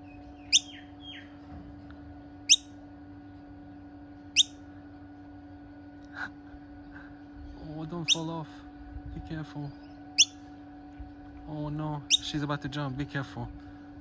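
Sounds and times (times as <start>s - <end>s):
faint bird chirps: 0.0s - 1.4s, 4.3s - 4.6s, 7.4s - 8.3s, 12.1s - 12.4s
steady low hum: 0.0s - 14.0s
bird calling sharply: 0.4s - 1.3s, 8.0s - 8.3s, 12.0s - 12.4s.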